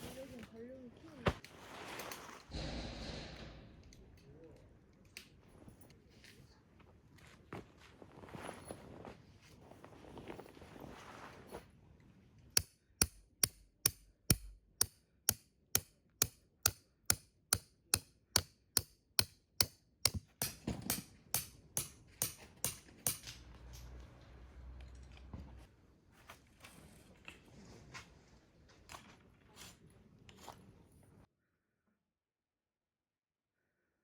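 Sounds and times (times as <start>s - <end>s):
hammer striking tent stake: 12.6s - 23.4s.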